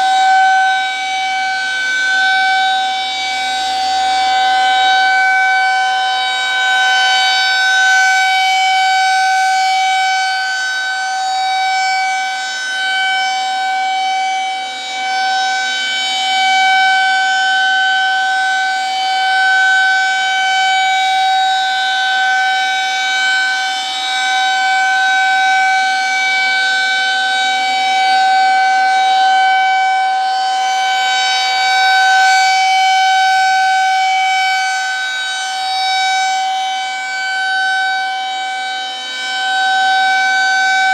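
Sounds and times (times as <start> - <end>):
rotating warning siren: 0.0 - 40.9.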